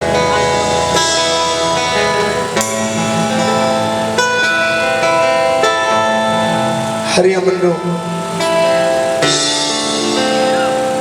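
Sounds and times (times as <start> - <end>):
guitar playing held chords: 0.0 - 11.0.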